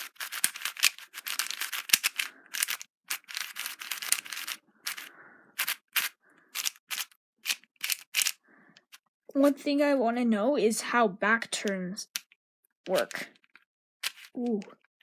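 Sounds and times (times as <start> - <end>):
puzzle cube clicking and sliding: 0.0 - 9.0, 12.0 - 14.8.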